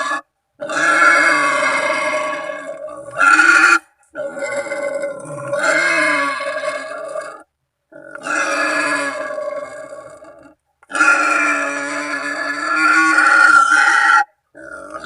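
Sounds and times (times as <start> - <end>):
pig squealing calls: 0.0 - 15.0.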